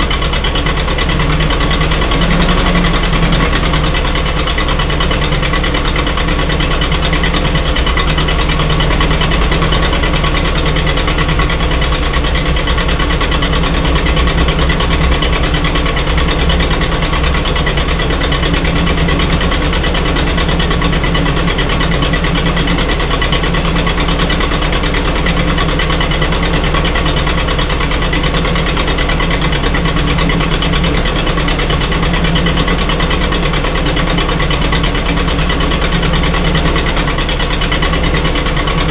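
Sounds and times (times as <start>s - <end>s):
gasoline engine running: 0.0s - 38.9s.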